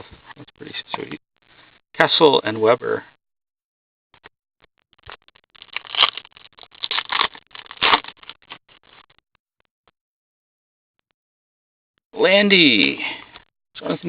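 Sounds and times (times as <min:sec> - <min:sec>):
cards and wrappers rustling: 0:05.0 - 0:09.2.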